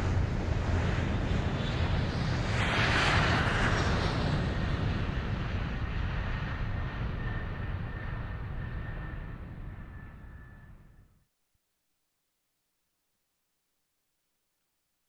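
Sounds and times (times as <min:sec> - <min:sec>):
aircraft engine passing overhead: 0:00.0 - 0:11.1.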